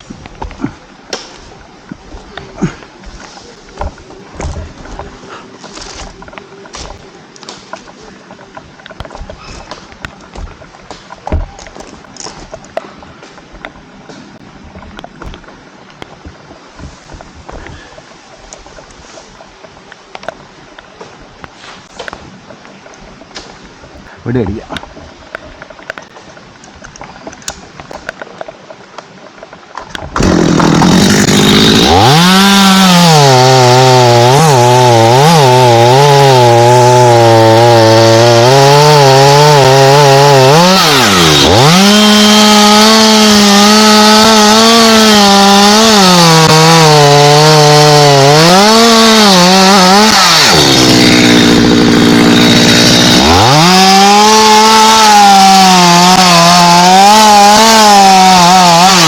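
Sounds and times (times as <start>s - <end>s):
chainsaw cutting into trunk: 30.0s - 59.0s.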